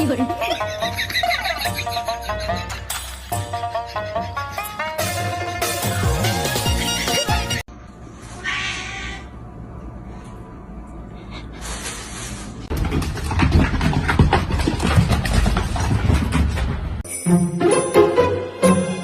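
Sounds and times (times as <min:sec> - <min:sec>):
cat meowing: 0:08.4 - 0:09.4
loud crackling rustling noise: 0:11.5 - 0:15.7.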